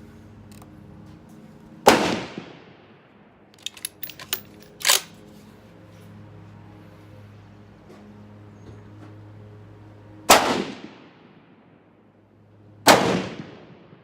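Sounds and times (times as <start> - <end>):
rifle shot with echo: 1.8 - 3.1, 10.3 - 11.5, 12.9 - 14.0
rifle bolt clicking and clacking: 3.6 - 5.2.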